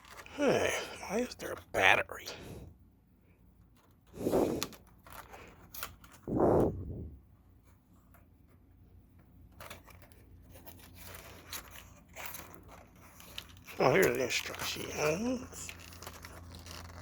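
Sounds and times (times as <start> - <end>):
plastic packaging handled: 0.0 - 1.5, 9.5 - 17.0.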